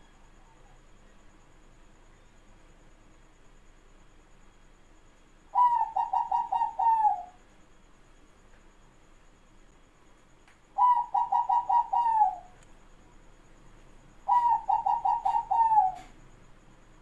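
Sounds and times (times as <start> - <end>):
dove cooing: 5.5 - 7.4, 10.8 - 12.6, 14.2 - 16.2.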